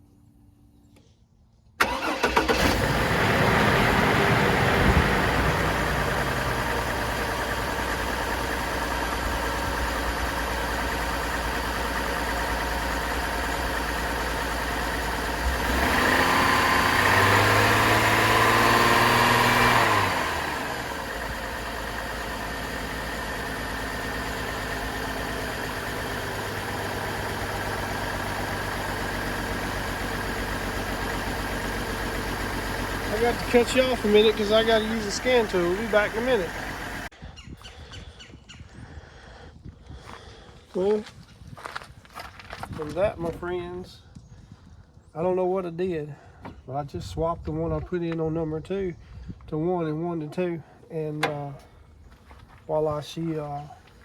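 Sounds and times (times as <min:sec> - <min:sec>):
car engine idling and revving: 0:01.8 - 0:37.2.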